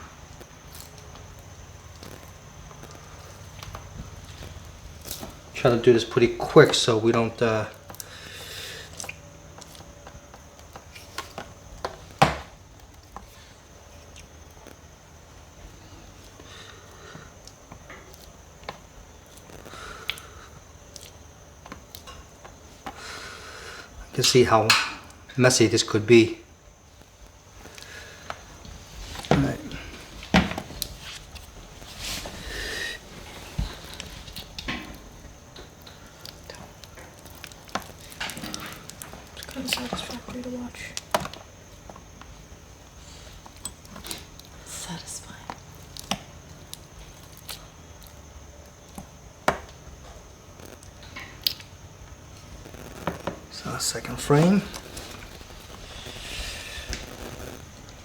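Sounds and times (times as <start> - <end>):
scraper scraping wax off honeycomb: 52.6 - 58.0.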